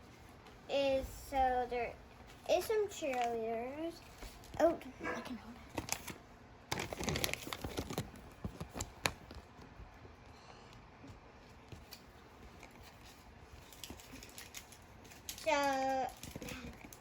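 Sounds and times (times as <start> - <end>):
small crackles and clicks: 2.6 - 3.5, 5.6 - 17.0
wrappers rustling and crinkling: 5.6 - 10.2, 11.2 - 17.0.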